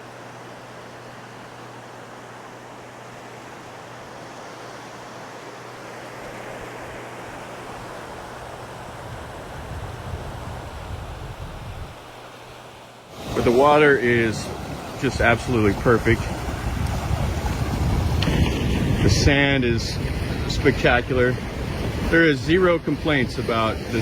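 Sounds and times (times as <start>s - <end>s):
waves washing onto sandy beach: 0.0s - 24.0s
wind buffeting microphone: 7.6s - 12.2s, 13.2s - 24.0s.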